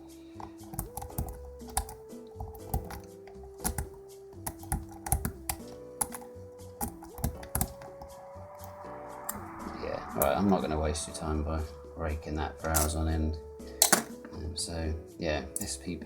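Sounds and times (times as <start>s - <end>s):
background music: 0.0s - 16.0s
lock pick raking pins: 0.1s - 8.2s, 13.8s - 14.3s.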